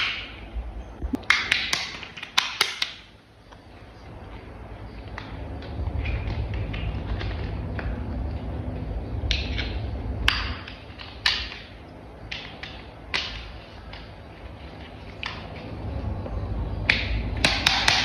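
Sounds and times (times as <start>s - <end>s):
sharp plastic snaps: 1.0s - 3.1s
low handling rumble: 3.5s - 17.6s.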